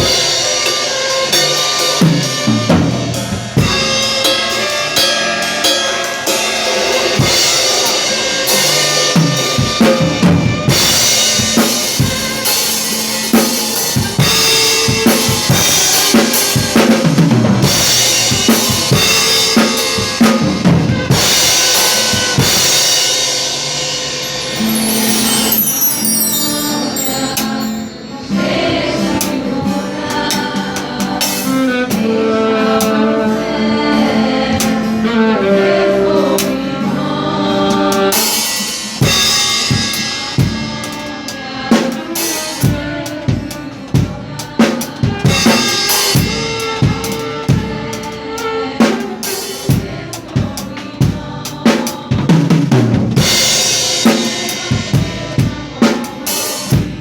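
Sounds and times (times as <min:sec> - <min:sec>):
drum kit beat: 0:00.0 - 0:04.8, 0:06.5 - 0:27.9, 0:41.8 - 0:57.0
recorded gospel song: 0:00.0 - 0:57.0.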